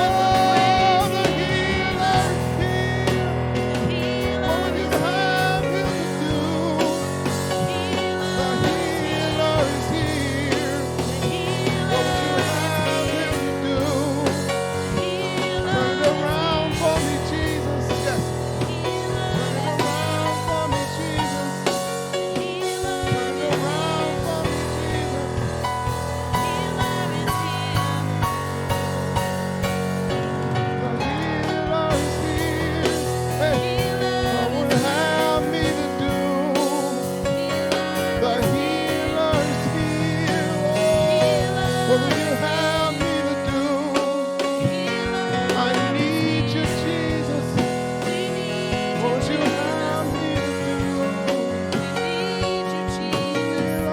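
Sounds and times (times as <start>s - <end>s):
person singing: 0.0s - 28.9s, 30.2s - 53.9s
band playing worship music: 0.0s - 53.9s
drums: 0.0s - 53.9s
guitar: 0.0s - 53.9s
keyboard or organ chords: 0.0s - 53.9s.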